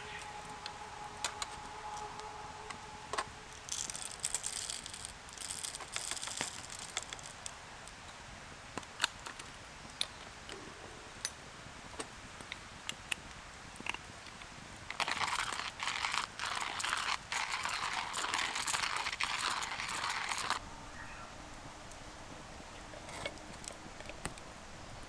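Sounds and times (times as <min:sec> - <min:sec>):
faint steady tone: 0:00.0 - 0:05.1, 0:20.0 - 0:25.0
small hard objects jangling: 0:00.0 - 0:07.8, 0:14.9 - 0:20.6.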